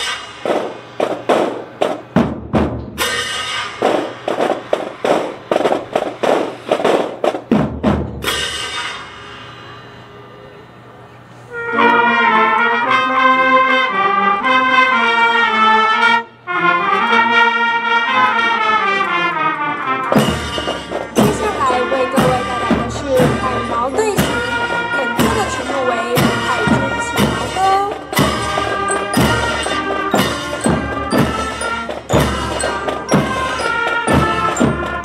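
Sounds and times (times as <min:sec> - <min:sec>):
military drums beating: 0:00.0 - 0:09.1, 0:16.5 - 0:35.0
brass sustained chords: 0:09.4 - 0:35.0.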